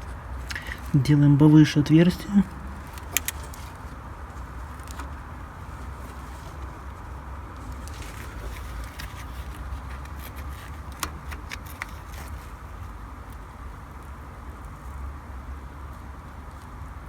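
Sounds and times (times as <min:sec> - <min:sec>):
steady low hum: 0:00.0 - 0:16.3.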